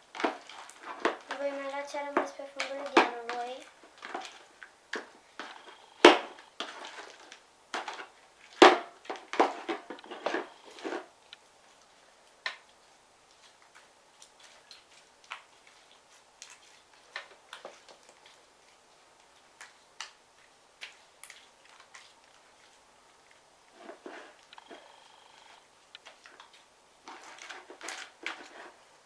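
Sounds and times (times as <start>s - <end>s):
utensil scraping a bowl: 23.7s - 25.1s, 27.1s - 28.8s.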